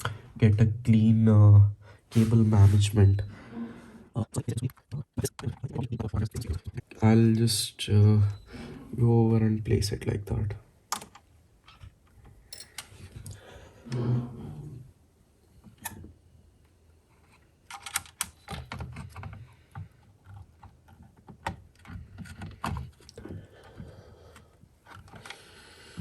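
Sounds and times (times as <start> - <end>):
hardware clicks and taps: 10.9 - 13.4.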